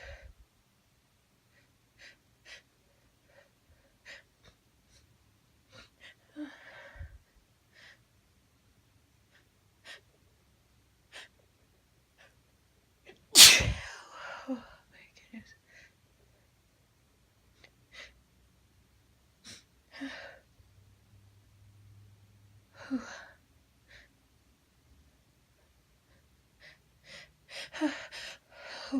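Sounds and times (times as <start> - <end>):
woman sniffing: 13.4 - 13.9
woman sneezing: 13.4 - 14.0.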